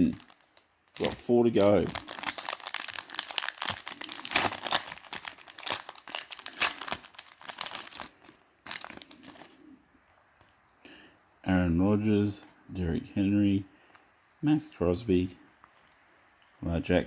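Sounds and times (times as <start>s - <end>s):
wrapper tearing and crinkling: 0.0s - 9.6s.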